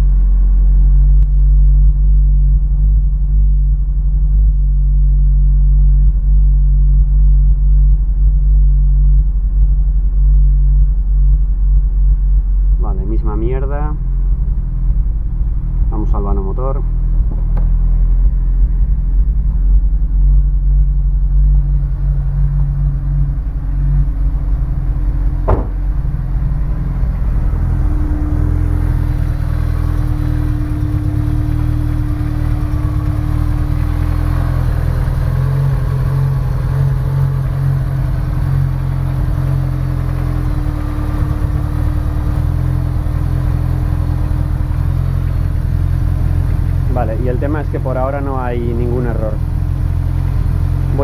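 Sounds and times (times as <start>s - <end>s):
misfiring car engine idling: 0.0s - 51.0s.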